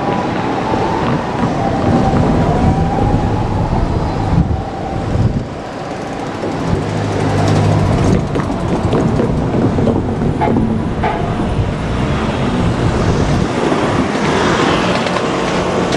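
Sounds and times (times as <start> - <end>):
vehicle passing rumble: 1.0 - 15.9
sharp clacks: 5.8 - 15.9.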